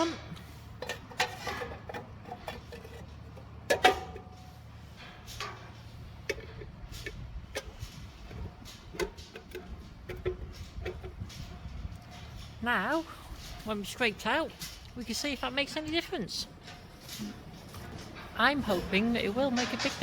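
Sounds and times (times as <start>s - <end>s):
knocks and clicks of handling: 6.3s - 12.4s.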